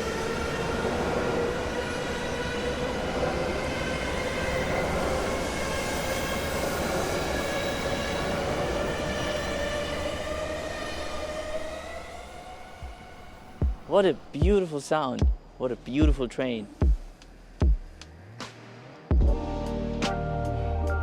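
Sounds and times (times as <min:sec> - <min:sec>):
train whine: 0:00.0 - 0:16.0
train rumbling past: 0:00.0 - 0:18.4.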